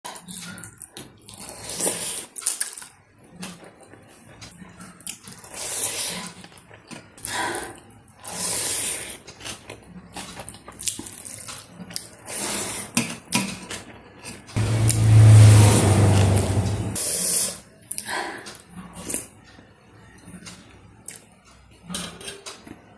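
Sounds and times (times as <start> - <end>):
chewing and smacking: 0.1 - 14.3, 20.2 - 22.8.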